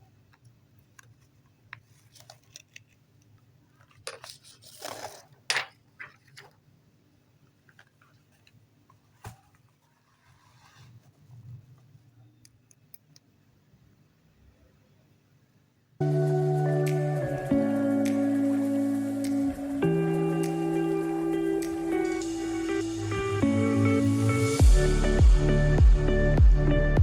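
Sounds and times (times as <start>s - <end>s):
handling clicks and rustling: 0.2s - 6.7s, 7.4s - 11.2s.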